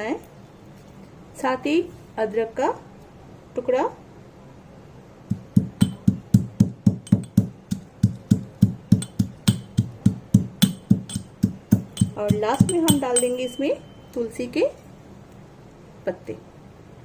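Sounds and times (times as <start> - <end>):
pestle pounding spices in mortar: 5.3 - 13.6.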